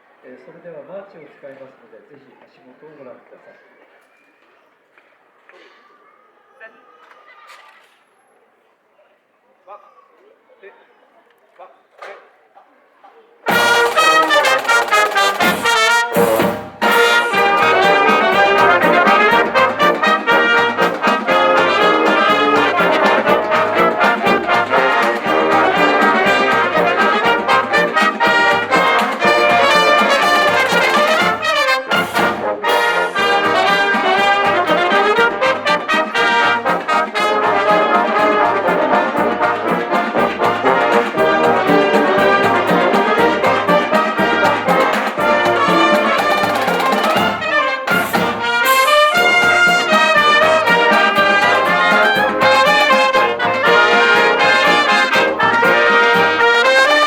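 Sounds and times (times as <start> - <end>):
marching band playing: 13.4 - 57.0.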